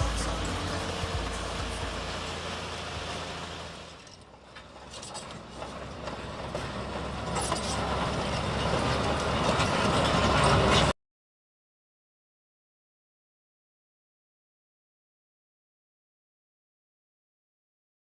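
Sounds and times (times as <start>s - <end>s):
bulldozer engine running: 0.0s - 10.9s
clanking machinery and tracks: 0.0s - 10.9s.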